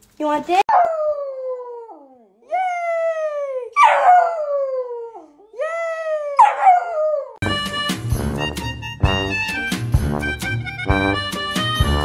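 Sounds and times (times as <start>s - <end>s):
dog howling: 3.8s - 5.3s, 6.2s - 7.4s
music: 7.4s - 12.0s.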